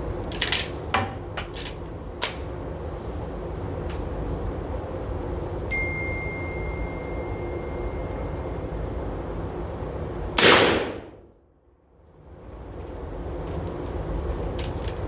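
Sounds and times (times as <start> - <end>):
steady background noise: 0.0 - 15.0
metallic ping ringing: 5.7 - 8.4
rifle shot: 10.4 - 11.3.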